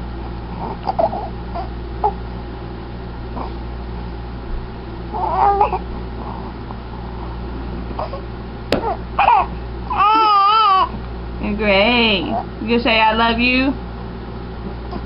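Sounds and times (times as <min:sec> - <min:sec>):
dog whining and howling: 0:00.5 - 0:02.2, 0:05.1 - 0:06.6, 0:08.8 - 0:11.0.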